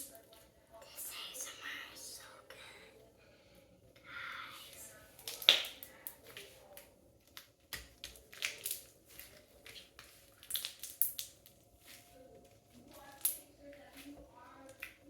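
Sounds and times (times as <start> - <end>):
slime squishing with sticky pops: 5.2 - 15.0.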